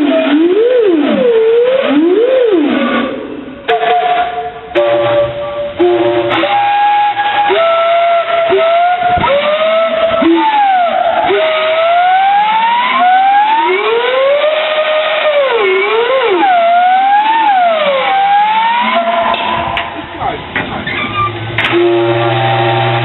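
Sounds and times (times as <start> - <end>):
steam whistle with sliding pitch: 0.0 - 20.0, 21.7 - 23.0
second lower whistle tone: 3.7 - 13.8, 21.0 - 22.9.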